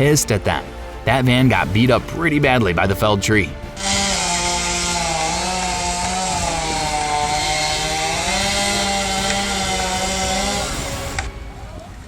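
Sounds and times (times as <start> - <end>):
chainsaw at high revs: 3.7 - 11.4.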